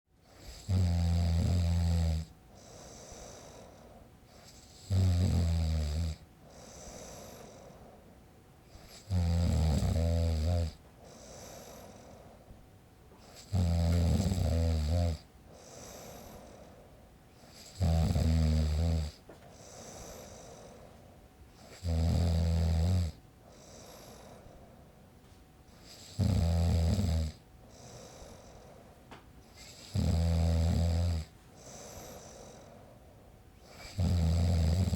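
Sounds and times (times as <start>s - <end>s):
man snoring: 0.4s - 7.8s, 8.8s - 12.3s, 13.2s - 16.8s, 17.4s - 20.8s, 21.6s - 24.6s, 25.8s - 28.8s, 29.6s - 32.8s, 33.6s - 34.9s
quiet breath: 2.4s - 4.9s, 6.3s - 9.1s, 10.8s - 13.5s, 15.2s - 17.9s, 19.2s - 21.9s, 23.2s - 26.2s, 27.4s - 30.0s, 30.9s - 34.2s.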